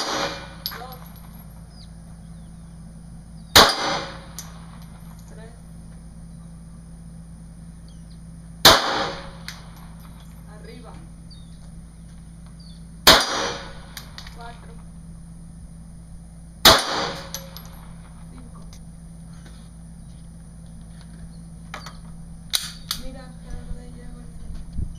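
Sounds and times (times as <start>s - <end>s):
pistol shots with echo: 0.0s - 1.2s, 3.5s - 4.9s, 8.6s - 10.0s, 13.0s - 14.3s, 16.6s - 18.0s.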